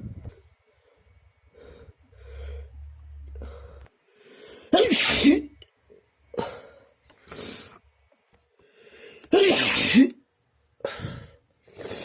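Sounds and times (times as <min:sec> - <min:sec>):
hitching breaths: 0:00.7 - 0:04.7
person sneezing: 0:04.7 - 0:05.5, 0:09.3 - 0:10.2.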